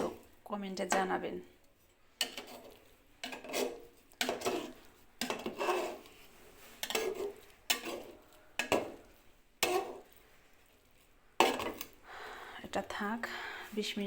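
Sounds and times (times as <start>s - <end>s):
metal cookware clattering: 2.2s - 6.1s, 6.8s - 10.1s.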